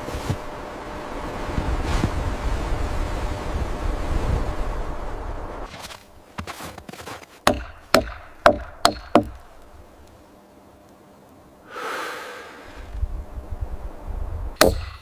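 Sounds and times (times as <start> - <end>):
sharp blows on wood: 7.4 - 9.4, 14.6 - 15.0.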